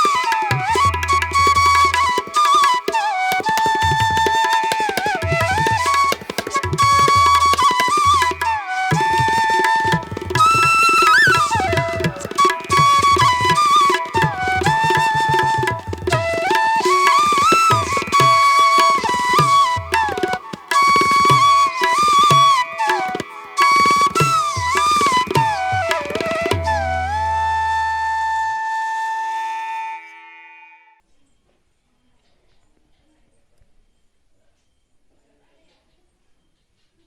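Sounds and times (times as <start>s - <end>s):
tabla rhythm: 0.0s - 28.7s
flute melody: 0.0s - 30.3s.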